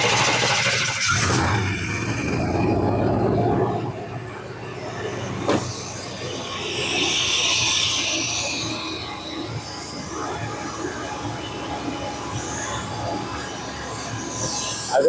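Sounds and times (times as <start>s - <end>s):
pickup engine idling: 0.0s - 9.9s.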